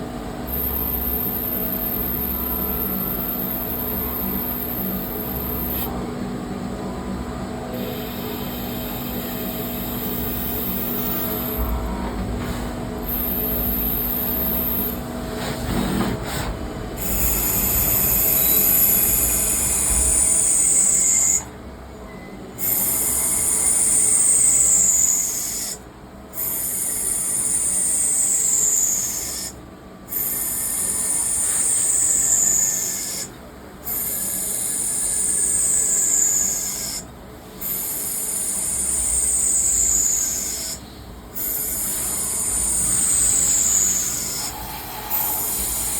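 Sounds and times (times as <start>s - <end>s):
lathe cutting whine: 41.4s - 45.9s.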